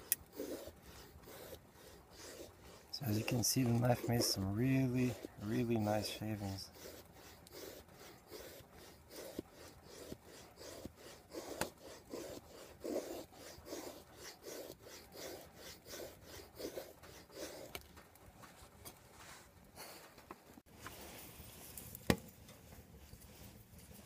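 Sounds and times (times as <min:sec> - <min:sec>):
knife scraping wood: 0:00.0 - 0:18.0.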